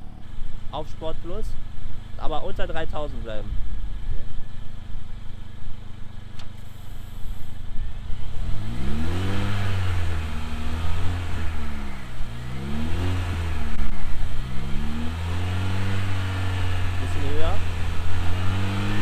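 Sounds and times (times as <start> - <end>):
car engine revving: 6.3 - 19.0.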